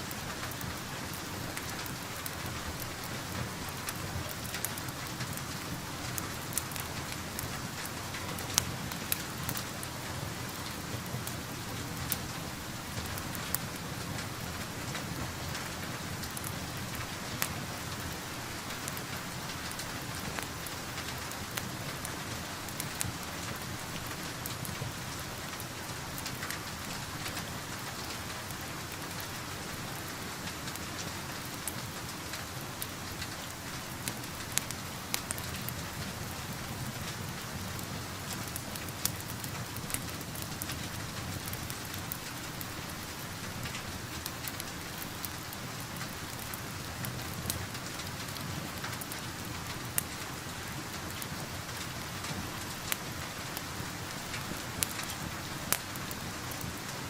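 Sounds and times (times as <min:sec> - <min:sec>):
fireplace crackling and popping: 0:00.0 - 0:57.0
steady rain falling: 0:00.0 - 0:57.0.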